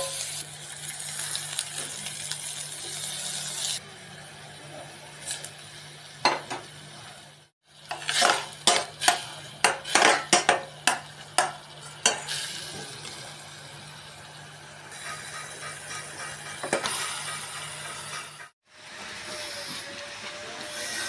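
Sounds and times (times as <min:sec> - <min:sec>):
faint frying: 0:00.0 - 0:21.0
spatula scraping pan: 0:07.9 - 0:10.4, 0:14.9 - 0:18.6.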